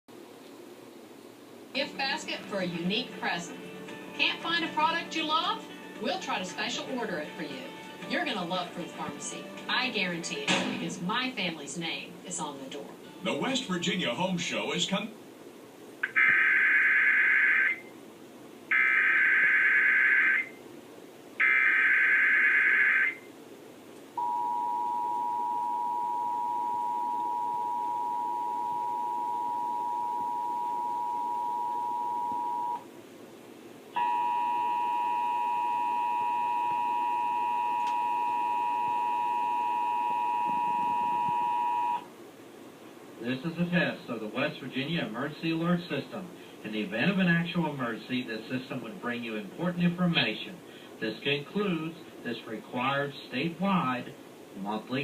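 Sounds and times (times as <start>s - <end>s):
two-tone attention signal: 24.2s - 32.8s, 34.0s - 42.0s.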